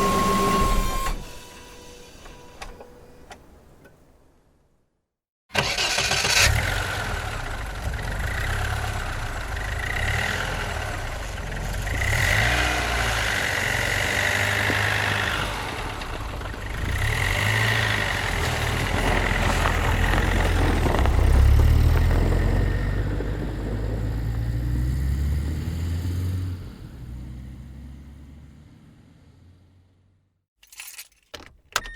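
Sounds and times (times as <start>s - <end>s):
car engine rumbling: 5.6s - 30.2s.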